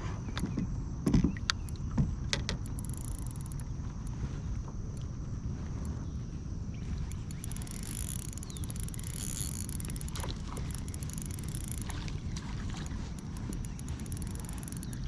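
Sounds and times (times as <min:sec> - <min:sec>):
wind buffeting microphone: 0:05.3 - 0:15.0
water splashing against hull: 0:06.8 - 0:15.0.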